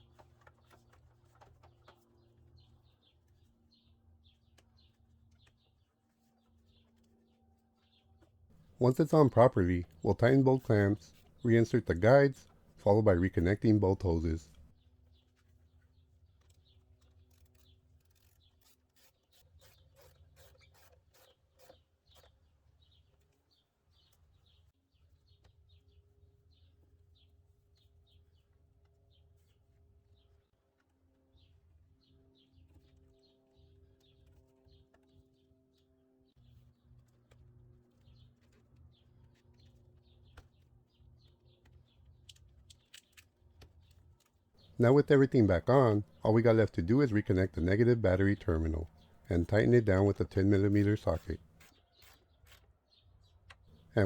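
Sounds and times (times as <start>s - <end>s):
birds chirping: 8.6s - 14.7s, 44.6s - 52.1s.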